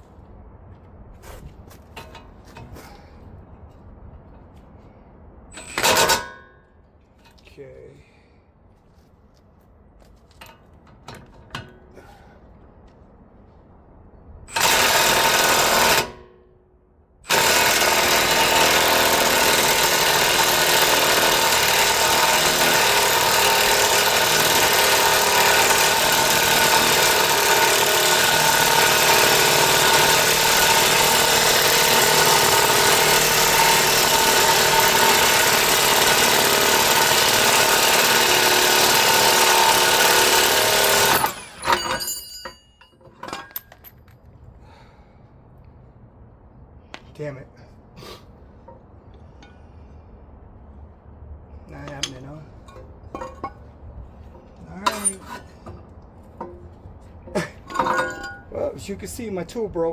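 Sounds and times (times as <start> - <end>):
impact wrench hammering: 5.6 - 6.4, 14.6 - 16.3, 17.3 - 43.8, 54.9 - 55.5, 57.4 - 58.5.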